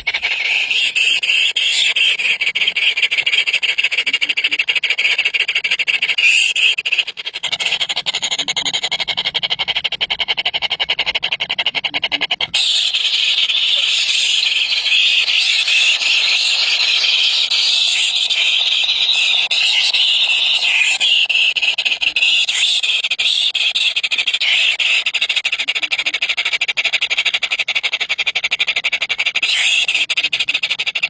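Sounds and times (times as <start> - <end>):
nestlings chirping: 0.0 - 10.1, 11.3 - 25.0.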